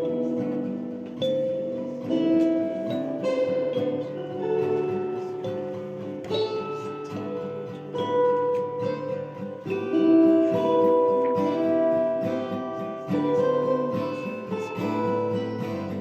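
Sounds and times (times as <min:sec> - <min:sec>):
guitar plucked notes: 0:00.0 - 0:16.0.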